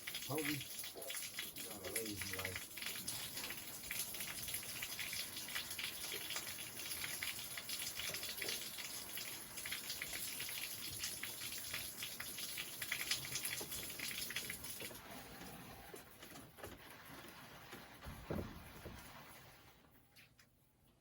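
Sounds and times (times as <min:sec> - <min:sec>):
water spattering hiss: 0:00.0 - 0:15.0.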